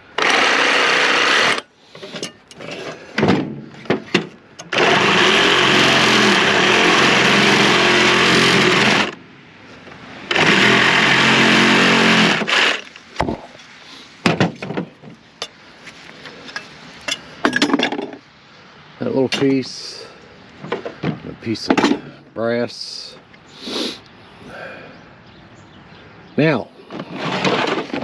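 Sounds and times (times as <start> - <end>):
small motor running: 4.8 - 9.1, 10.3 - 12.8
metal scrap knocking and clinking: 16.5 - 18.2, 21.0 - 22.1.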